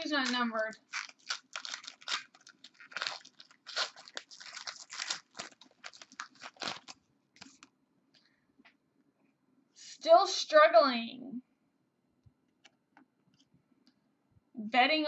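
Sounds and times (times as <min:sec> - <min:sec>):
card wrapper crinkling and rustling: 0:00.0 - 0:07.7.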